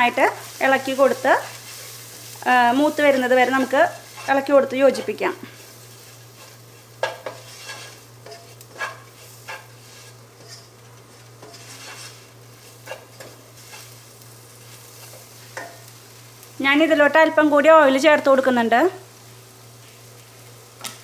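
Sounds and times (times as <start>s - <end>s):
faint sizzle: 0.0s - 21.0s
spoon scraping a pan: 0.3s - 15.9s.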